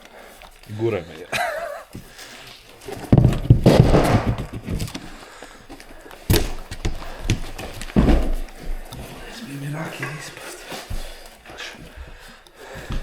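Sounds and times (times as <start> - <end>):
rustling: 0.0 - 13.0
heavy thumps and knocks: 2.9 - 5.2, 6.2 - 9.1.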